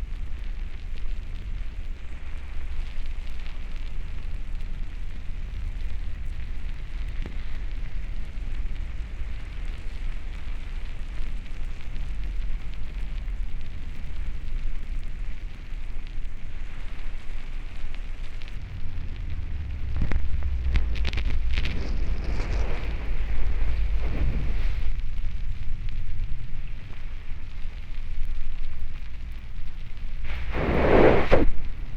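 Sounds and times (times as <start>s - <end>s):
bubbles fizzing and crackling: 7.4s - 30.5s.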